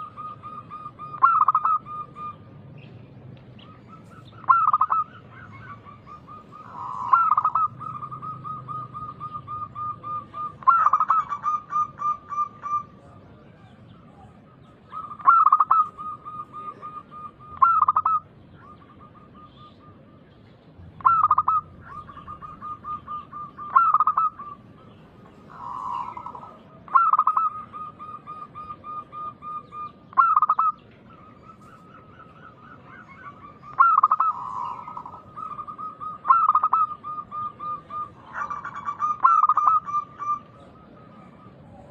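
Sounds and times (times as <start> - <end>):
dove cooing: 0.0 - 2.9, 3.5 - 41.9.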